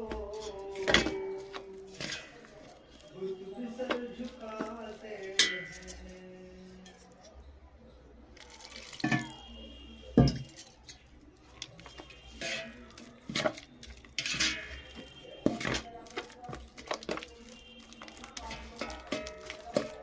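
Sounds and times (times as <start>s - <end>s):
water pouring into a bowl: 8.4s - 9.6s
spoon knocking and scraping a bowl: 11.8s - 17.4s, 18.1s - 20.0s.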